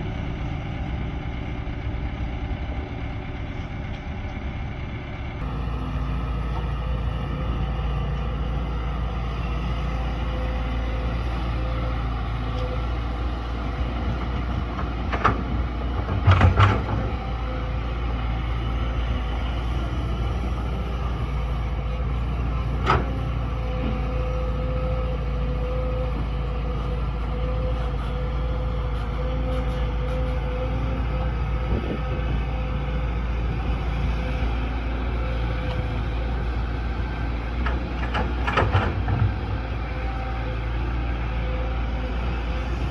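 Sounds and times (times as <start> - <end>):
excavator diesel engine running: 0.0 - 42.9.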